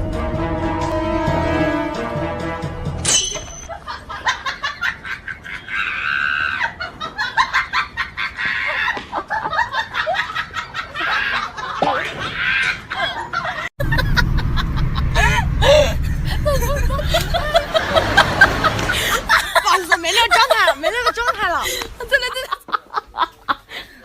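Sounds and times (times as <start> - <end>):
music: 0.0 - 3.1.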